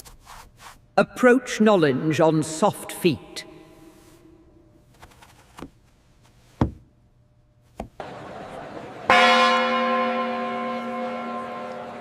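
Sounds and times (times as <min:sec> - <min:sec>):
soft knocks: 0:06.6 - 0:06.9
bell ringing: 0:09.1 - 0:12.0.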